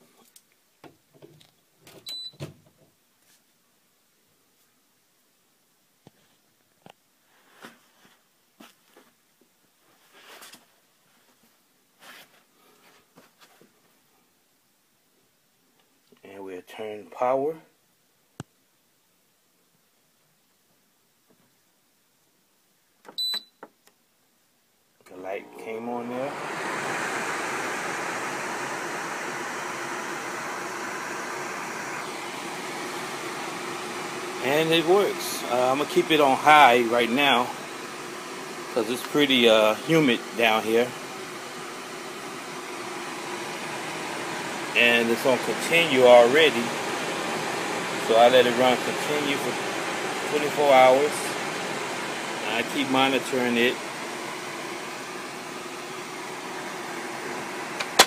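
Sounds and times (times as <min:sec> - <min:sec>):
dehumidifier fan rushing: 0:25.1 - 0:58.0.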